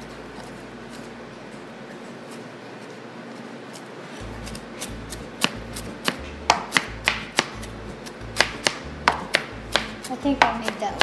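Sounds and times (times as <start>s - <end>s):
knife chopping on cutting board: 4.4s - 11.0s.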